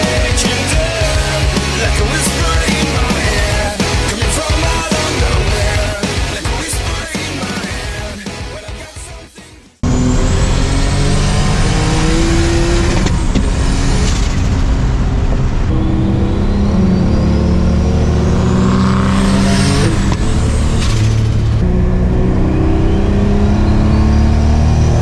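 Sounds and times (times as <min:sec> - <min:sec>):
car engine accelerating: 0:09.8 - 0:25.0
high whine: 0:09.8 - 0:25.0.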